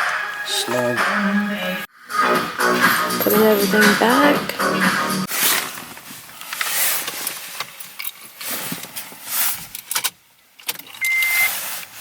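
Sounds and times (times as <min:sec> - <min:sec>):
shuffling and scraping: 0:02.8 - 0:10.0, 0:11.4 - 0:12.0
car warning chime beep: 0:11.0 - 0:11.5.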